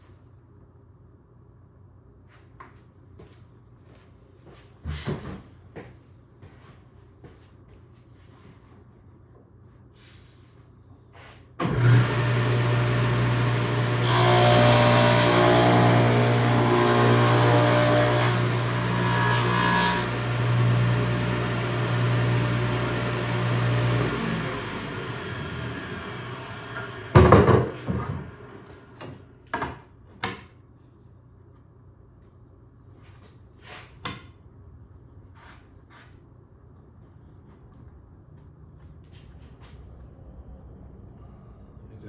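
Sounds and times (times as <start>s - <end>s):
saw blade cutting plywood: 11.6s - 28.4s
table saw humming: 11.6s - 29.2s.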